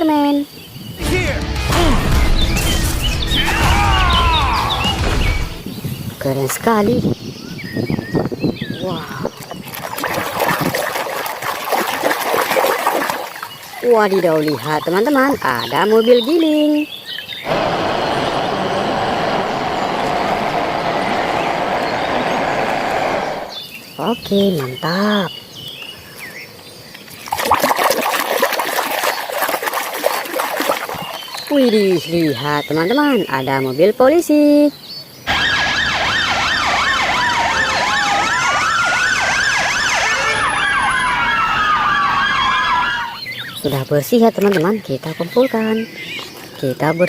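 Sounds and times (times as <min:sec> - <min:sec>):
rushing splashing water: 0:08.8 - 0:23.5, 0:27.0 - 0:33.1
police siren: 0:17.5 - 0:23.5, 0:35.3 - 0:43.2.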